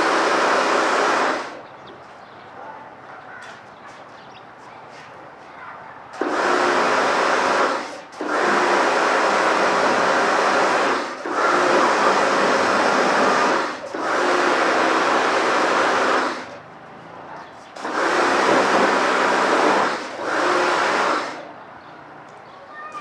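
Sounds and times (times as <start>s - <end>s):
pressure washer water jet hissing: 0.0s - 1.7s, 6.1s - 16.7s, 17.6s - 21.6s
pump motor humming: 0.0s - 2.0s, 6.1s - 16.7s, 17.7s - 21.6s.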